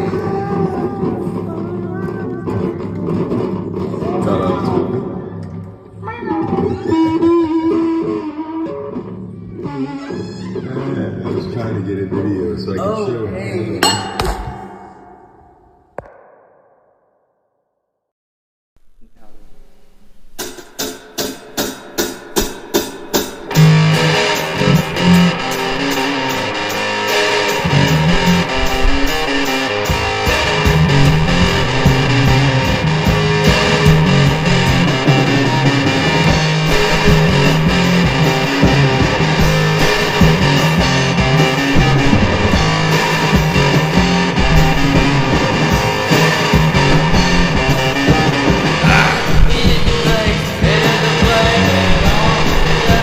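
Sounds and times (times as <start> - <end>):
rock band with bass and drums: 0.0 - 10.0, 20.4 - 53.0
electric guitar hits: 13.8 - 16.7, 21.5 - 53.0.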